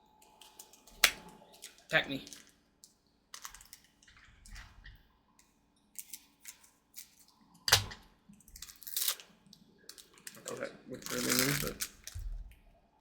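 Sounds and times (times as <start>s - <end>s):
cards crinkling: 0.4s - 4.1s, 6.0s - 7.3s, 8.4s - 12.2s.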